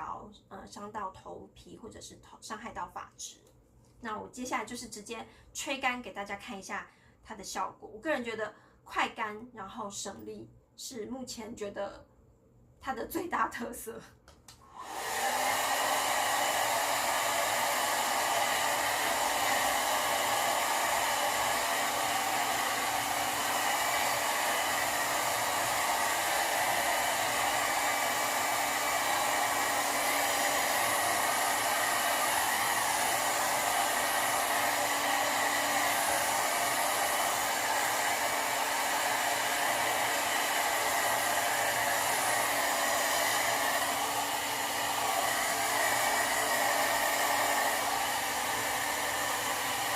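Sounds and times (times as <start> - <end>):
hair dryer blowing: 14.6 - 49.9.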